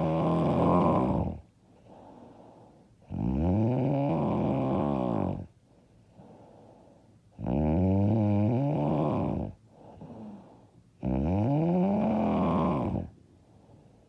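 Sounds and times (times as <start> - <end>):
woman snoring loudly: 0.0 - 1.4, 3.1 - 5.5, 7.4 - 10.4, 11.0 - 13.1
soft breathing: 0.6 - 3.1, 5.5 - 7.4, 9.2 - 11.0, 12.3 - 14.0.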